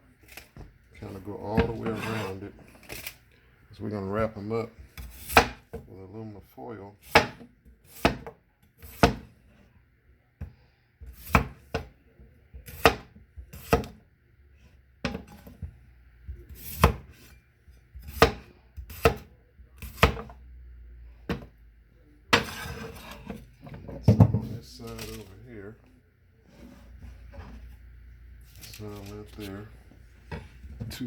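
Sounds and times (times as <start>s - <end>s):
knife chopping on cutting board: 4.8s - 5.9s, 7.0s - 9.4s, 10.4s - 11.9s, 12.6s - 14.0s, 15.0s - 15.7s, 16.3s - 17.3s, 18.0s - 20.4s, 22.3s - 23.4s.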